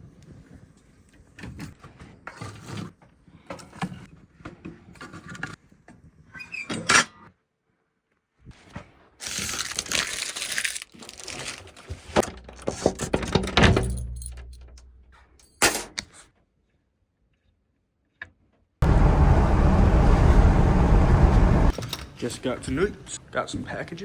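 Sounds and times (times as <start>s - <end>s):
low rumble: 18.8s - 21.8s.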